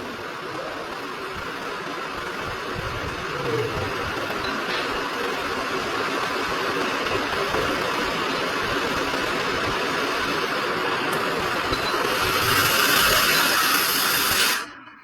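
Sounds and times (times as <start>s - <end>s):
electric blower air hiss: 8.8s - 14.8s.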